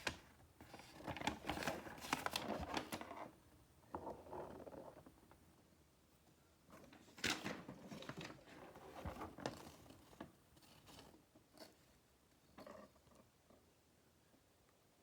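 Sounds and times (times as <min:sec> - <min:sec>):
paper pages rustling: 0:00.0 - 0:03.3.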